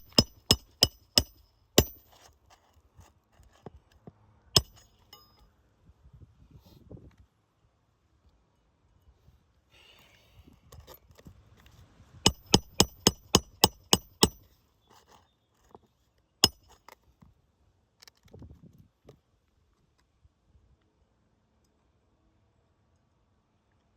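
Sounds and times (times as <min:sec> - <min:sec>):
hammer striking nail: 0:00.0 - 0:02.2, 0:04.6 - 0:05.3, 0:12.3 - 0:14.4, 0:16.4 - 0:16.8.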